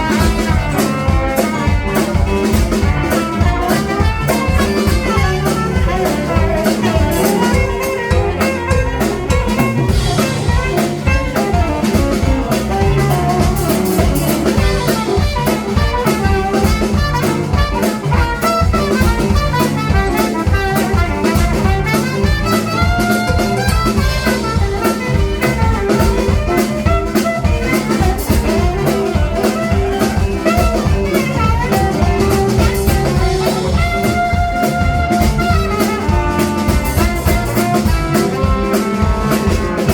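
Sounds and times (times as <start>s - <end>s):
blues band playing: 0.0s - 39.9s
drum kit steady beat: 0.0s - 39.9s.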